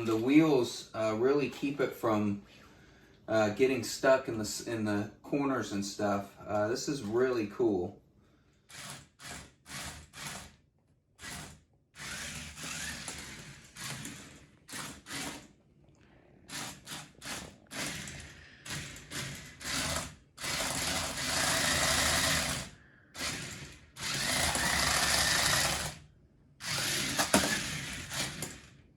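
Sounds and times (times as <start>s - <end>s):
toy car electric motors whirring: 8.7s - 10.6s, 11.2s - 15.5s, 16.5s - 28.8s.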